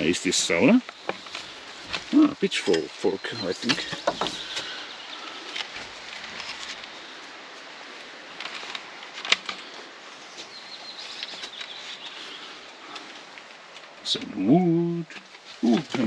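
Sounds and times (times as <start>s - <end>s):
faint rustling: 0.0s - 16.0s
light clicks and knocks: 3.6s - 4.7s.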